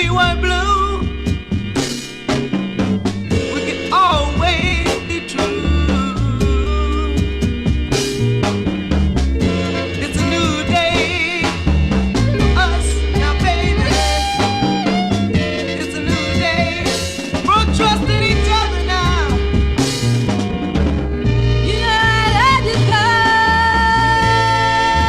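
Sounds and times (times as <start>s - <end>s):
person singing: 0.0s - 1.2s, 3.3s - 7.4s, 9.9s - 11.6s, 12.3s - 14.9s, 15.6s - 19.4s, 21.6s - 25.0s
upbeat ska band: 0.0s - 25.0s.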